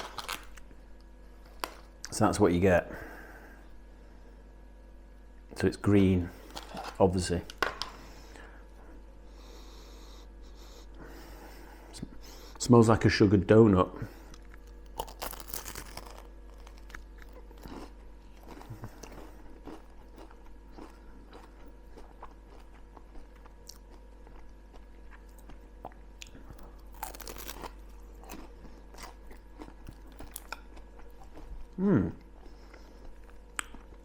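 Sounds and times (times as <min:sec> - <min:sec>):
pastry crunching while chewing: 0:00.0 - 0:00.8, 0:14.3 - 0:34.0
faint steady hum: 0:00.0 - 0:34.0.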